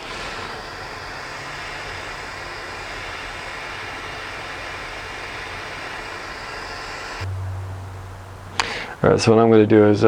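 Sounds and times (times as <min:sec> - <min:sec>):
torch flame hissing: 0:00.0 - 0:07.3.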